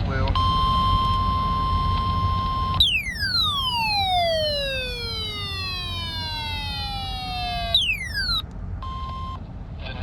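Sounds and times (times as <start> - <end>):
tone sliding downward: 1.6 - 8.4
steady high electronic tone: 2.2 - 8.4.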